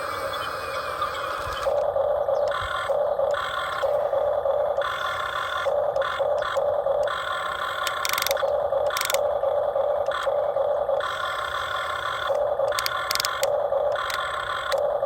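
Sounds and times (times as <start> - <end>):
small electric motors whining: 0.0 - 15.0
sharp clicks: 5.6 - 9.2, 12.2 - 14.9.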